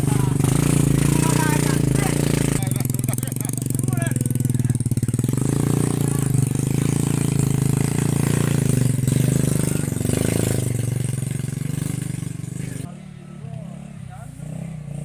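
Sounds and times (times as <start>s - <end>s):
engine running steadily: 0.0s - 15.0s.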